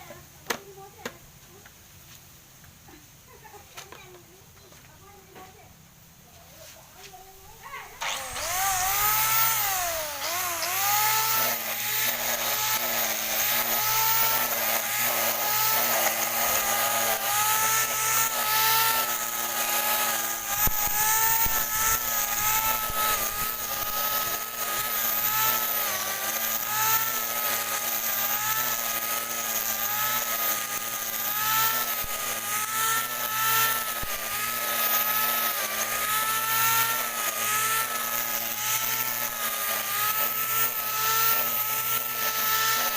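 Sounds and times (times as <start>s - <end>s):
brush cutter engine running: 7.3s - 42.9s.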